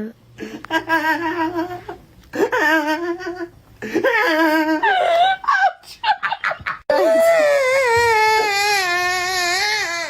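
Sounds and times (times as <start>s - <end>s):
person laughing with wavering pitch: 0.7s - 8.7s.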